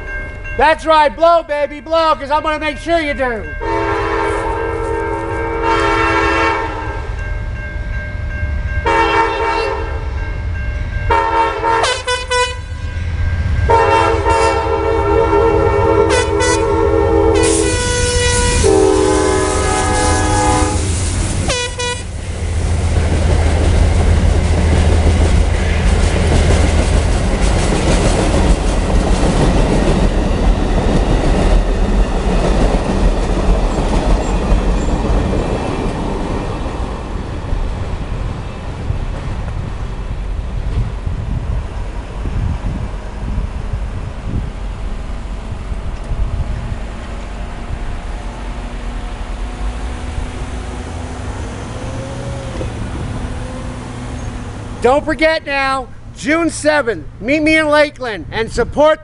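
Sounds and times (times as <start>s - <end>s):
train wheels rumbling on rails: 0.0s - 57.7s
train air horn blasts: 3.6s - 7.1s, 8.8s - 10.0s, 11.1s - 13.0s, 13.7s - 22.1s.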